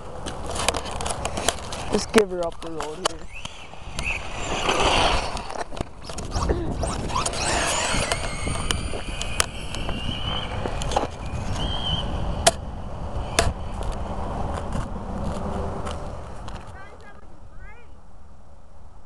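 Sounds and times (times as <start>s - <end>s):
road and wind rumble: 0.0s - 19.0s
sharp clicks: 2.5s - 10.1s
electric rc car motor whining: 3.0s - 12.5s.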